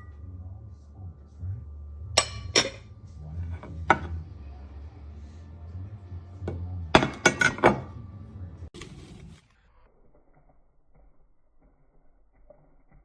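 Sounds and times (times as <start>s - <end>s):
plates and bowls clinking: 2.2s - 4.2s, 6.5s - 7.9s.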